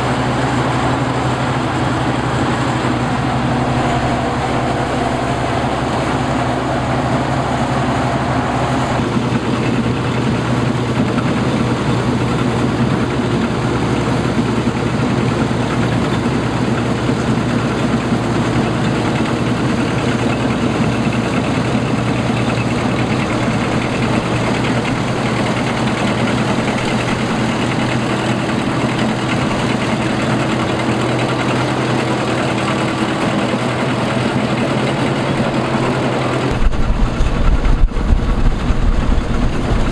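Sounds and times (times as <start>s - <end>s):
higher tone: 0.0s - 9.0s
combine harvester engine drone: 0.0s - 39.9s.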